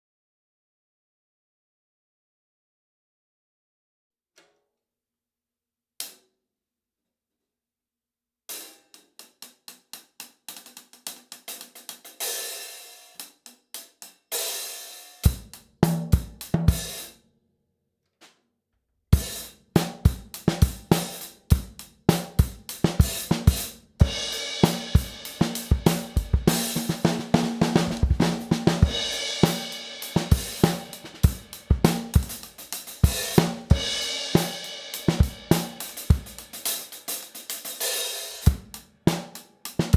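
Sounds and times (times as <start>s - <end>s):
rock drum beat: 14.4s - 17.1s, 19.2s - 39.9s
snare drum: 15.1s - 17.1s, 19.2s - 39.9s
bass drum: 20.1s - 36.5s
hi-hat strokes: 22.5s - 38.7s.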